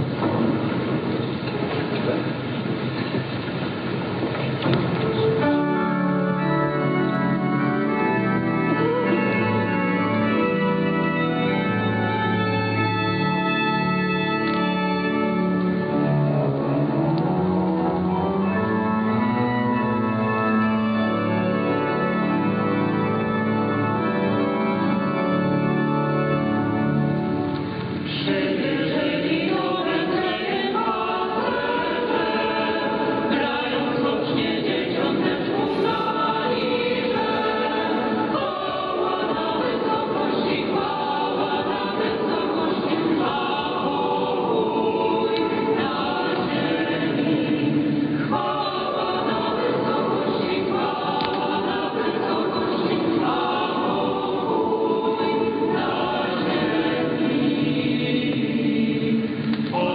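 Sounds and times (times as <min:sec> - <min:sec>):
choir singing over am radio: 0:28.2 - 0:59.9.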